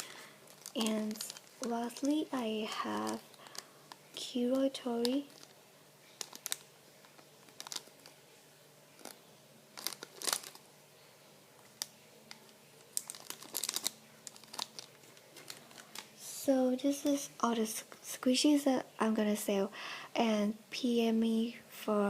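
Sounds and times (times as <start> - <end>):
plastic packaging crinkling: 0.0 - 8.3, 8.9 - 10.7, 11.6 - 17.3.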